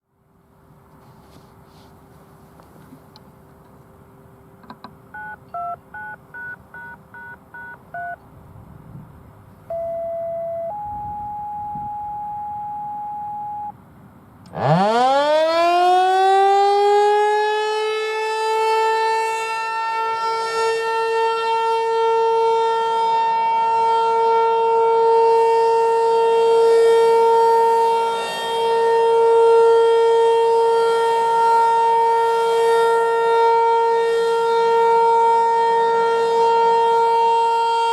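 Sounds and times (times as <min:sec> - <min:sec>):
touch-tone beeps: 0:05.2 - 0:08.2, 0:09.7 - 0:13.7
steady beeps: 0:09.7 - 0:13.8
warning siren winding up: 0:14.5 - 0:20.8.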